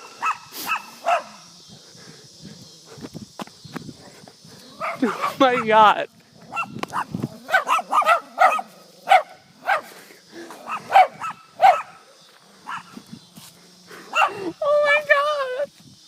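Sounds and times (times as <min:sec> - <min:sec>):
small dogs barking: 0:00.0 - 0:01.5, 0:04.7 - 0:13.0, 0:14.0 - 0:14.5.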